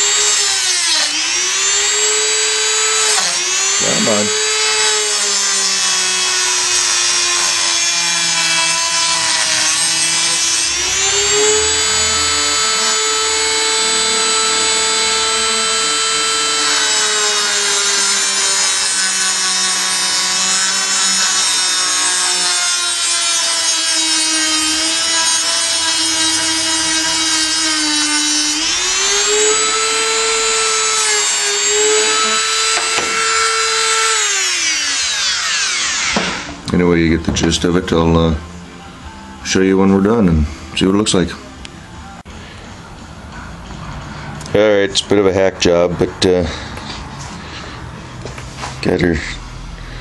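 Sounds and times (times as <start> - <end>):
rotary tool whining while cutting: 0.0 - 36.6.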